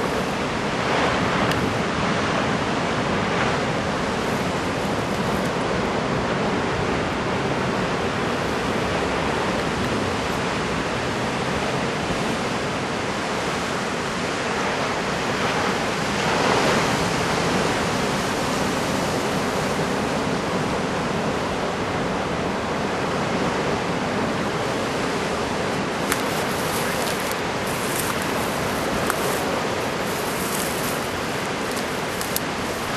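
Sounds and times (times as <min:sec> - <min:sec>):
heavy surf breaking: 0:00.0 - 0:32.9.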